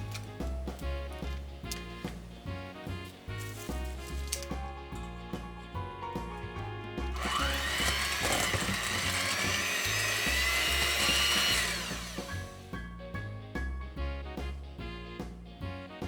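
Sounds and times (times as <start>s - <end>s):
background music: 0.0s - 16.0s
electric hand mixer whining: 7.1s - 12.7s.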